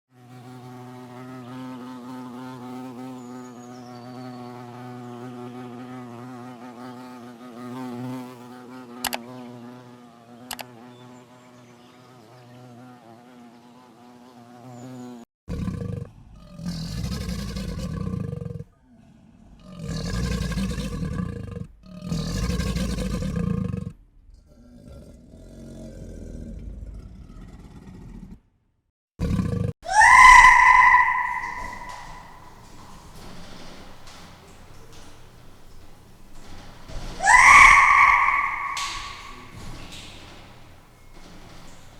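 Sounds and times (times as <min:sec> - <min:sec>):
animal roars: 0:15.5 - 0:28.4, 0:29.2 - 0:41.9.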